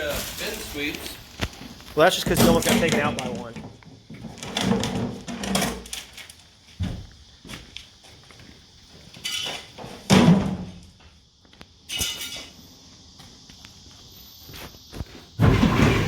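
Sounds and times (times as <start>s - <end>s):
metal clanks and knocks: 2.2s - 5.9s.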